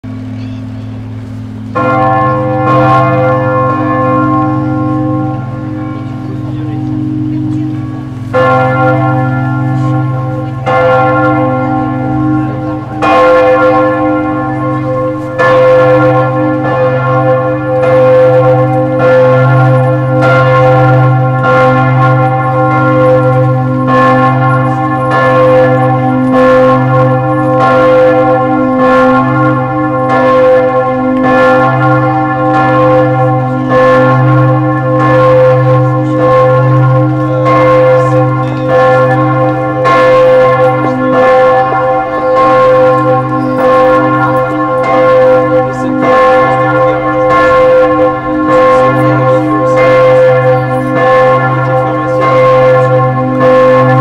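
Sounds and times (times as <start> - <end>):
church bells ringing: 0.0 - 54.0.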